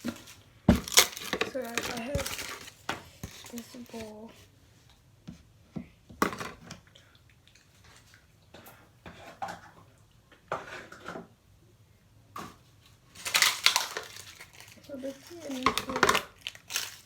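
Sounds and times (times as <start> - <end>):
bowl and utensils clattering: 0.0 - 4.1, 15.2 - 16.3.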